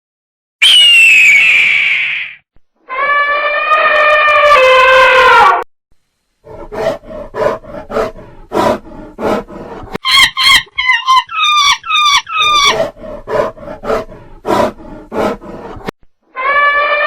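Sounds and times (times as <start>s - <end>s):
high-pitched animal screaming calls: 0.6s - 5.6s, 10.0s - 12.9s, 16.3s - 17.0s
animal grunting pulses: 6.4s - 10.0s, 12.5s - 15.9s.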